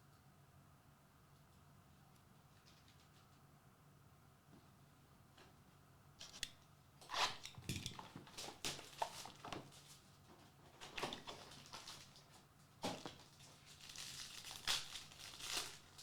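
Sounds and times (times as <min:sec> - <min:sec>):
packaging crinkling and rustling: 0:07.2 - 0:16.0.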